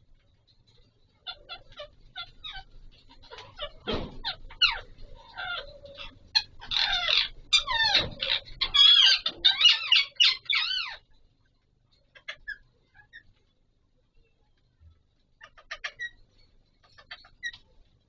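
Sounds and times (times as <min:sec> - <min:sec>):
parakeets squawking: 0:01.1 - 0:11.2, 0:12.0 - 0:13.4, 0:15.4 - 0:16.2, 0:16.8 - 0:17.6.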